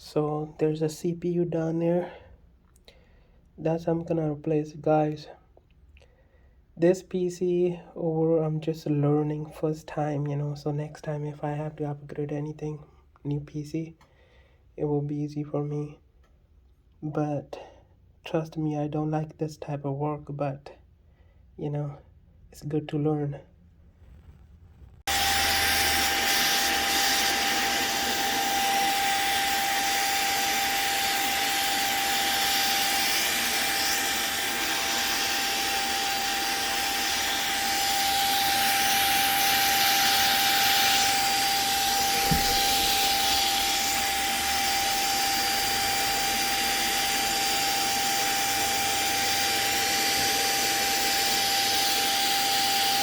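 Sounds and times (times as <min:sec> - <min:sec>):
vacuum cleaner whining: 0:00.0 - 0:01.6, 0:24.0 - 0:53.0.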